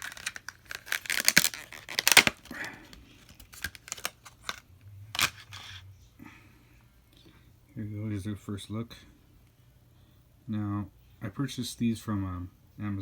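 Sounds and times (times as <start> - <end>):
packaging crackling and tearing: 0.0 - 5.8.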